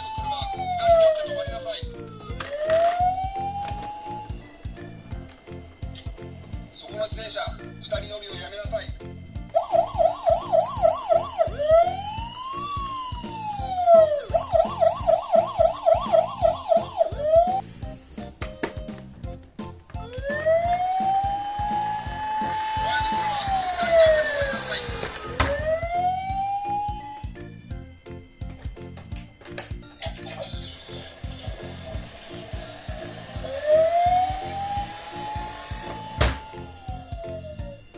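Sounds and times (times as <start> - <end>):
electronic siren yelp and wail: 0.0 - 4.5, 9.5 - 17.7, 20.0 - 27.4, 33.3 - 37.9
background music with steady beat: 0.0 - 37.9.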